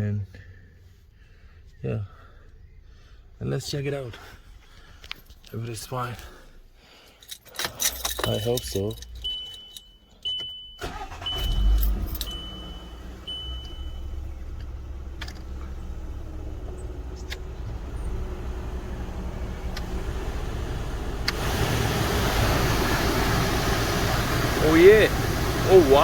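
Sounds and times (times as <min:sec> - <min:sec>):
car engine rumble: 0:04.4 - 0:26.0
warning chime beeps: 0:09.0 - 0:14.3
blower fan rushing air: 0:17.5 - 0:26.0.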